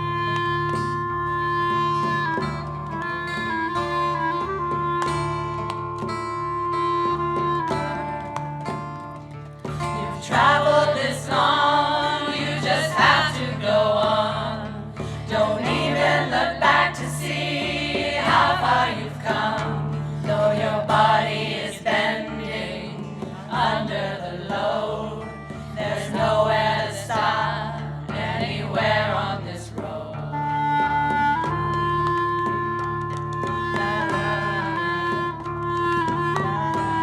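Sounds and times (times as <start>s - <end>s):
instrumental accompaniment: 0.0s - 37.0s
choir singing: 9.8s - 30.6s.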